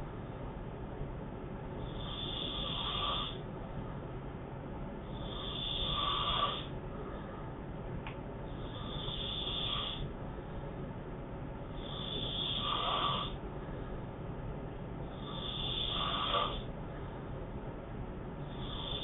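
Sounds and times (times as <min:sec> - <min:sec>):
man snoring: 0:01.8 - 0:03.4, 0:05.1 - 0:06.7, 0:08.5 - 0:10.1, 0:11.8 - 0:13.4, 0:15.1 - 0:16.7, 0:18.5 - 0:19.0.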